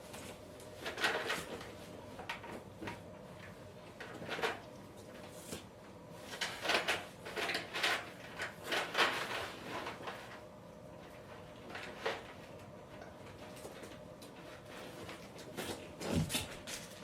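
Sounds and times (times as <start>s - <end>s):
rustling and scraping of parts: 0.0s - 17.0s.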